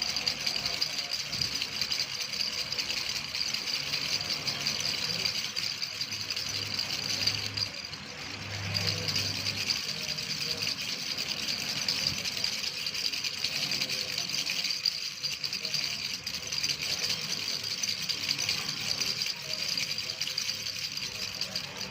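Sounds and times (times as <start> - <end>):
baby rattle shaking: 0.0 - 21.9.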